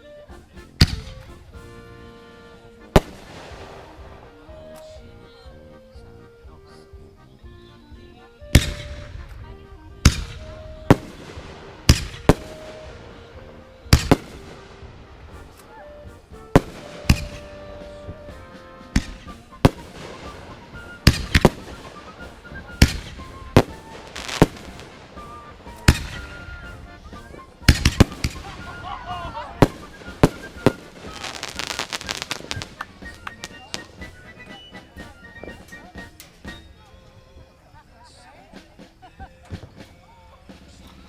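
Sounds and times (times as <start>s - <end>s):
fireworks bangs with crackle: 3.0s - 4.2s, 10.0s - 13.2s, 13.9s - 15.7s, 16.4s - 18.2s, 19.0s - 22.2s, 22.8s - 26.6s, 27.4s - 35.9s.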